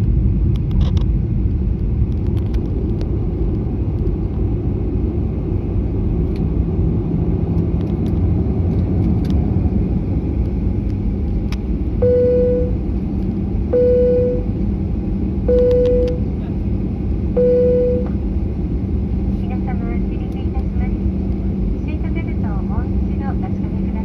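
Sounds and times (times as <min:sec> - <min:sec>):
jet airliner engine rumble: 0:00.0 - 0:24.0
short beeps: 0:12.0 - 0:12.8, 0:13.7 - 0:14.5, 0:15.5 - 0:16.3, 0:17.4 - 0:18.1.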